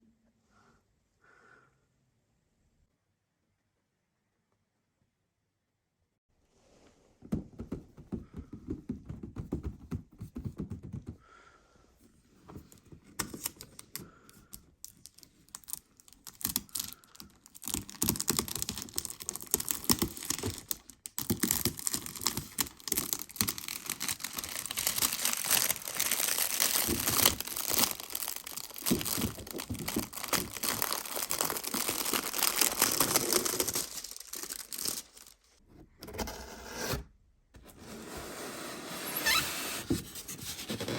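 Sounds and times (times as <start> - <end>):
packaging rustling and tearing: 13.1 - 35.6.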